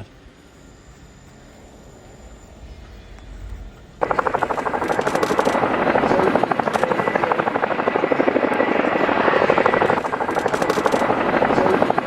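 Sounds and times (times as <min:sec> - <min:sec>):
helicopter rotor chopping: 0:03.5 - 0:12.0.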